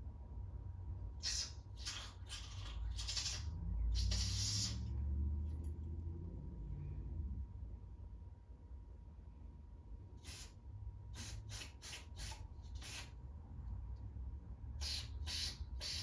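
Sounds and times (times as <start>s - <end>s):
spray hissing from nozzle: 1.2s - 4.8s, 10.2s - 10.5s, 11.1s - 13.2s, 14.8s - 16.0s.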